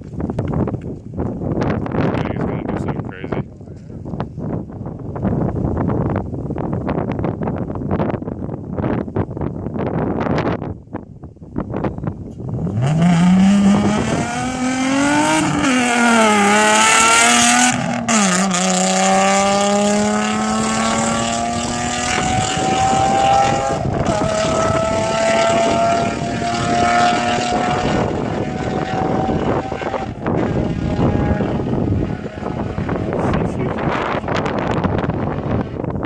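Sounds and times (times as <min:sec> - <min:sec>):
loud car engine revving: 0:12.5 - 0:35.8.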